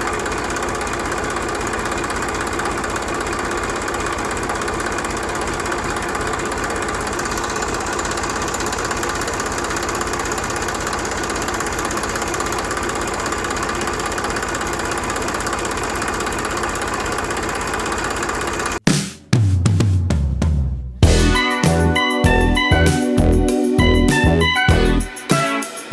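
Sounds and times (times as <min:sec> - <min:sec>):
small tractor engine running: 0:00.0 - 0:18.8.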